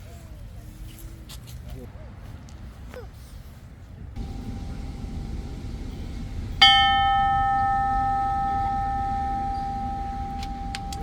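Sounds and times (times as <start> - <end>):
bell ringing: 6.2 - 11.0.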